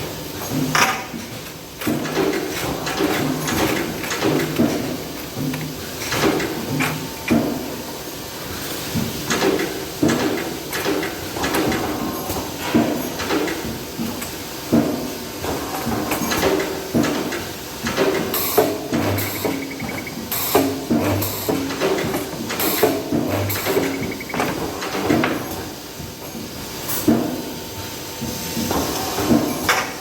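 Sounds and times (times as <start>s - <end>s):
metal press clunking: 16.2s - 25.4s.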